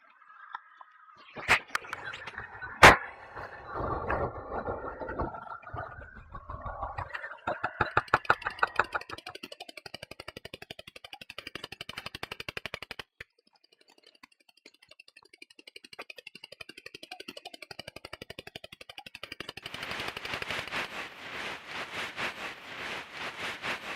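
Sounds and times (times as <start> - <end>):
fast train of clicks: 6.4 - 13.3, 14.2 - 23.9.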